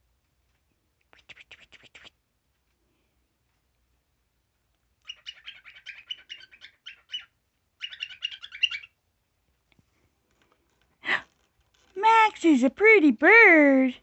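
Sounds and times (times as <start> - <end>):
cockatiel chirping: 5.0 - 9.0.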